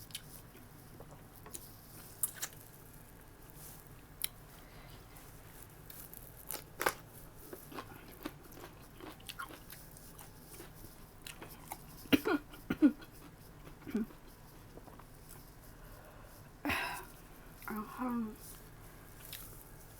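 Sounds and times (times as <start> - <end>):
person chewing food: 0.0 - 17.6, 18.5 - 19.9.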